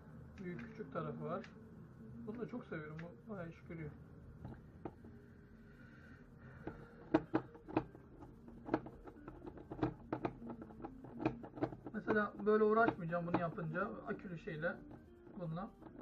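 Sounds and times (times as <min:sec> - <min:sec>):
sharp clicks and taps on plastic: 0:06.6 - 0:14.2.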